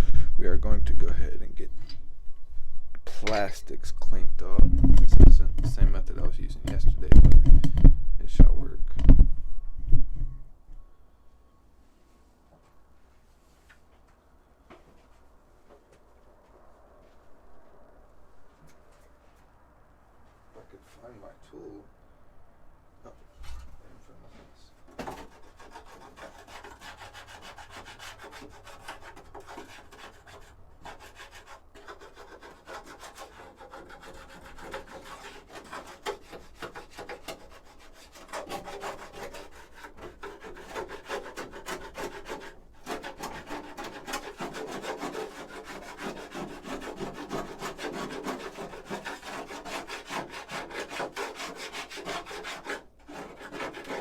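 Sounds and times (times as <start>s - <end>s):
scrubbing on plastic panels: 24.8s - 54.0s.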